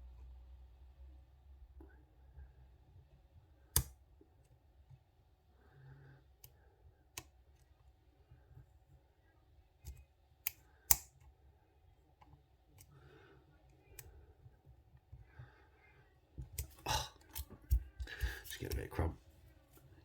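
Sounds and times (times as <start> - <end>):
lock pick clicking: 9.8 - 11.2.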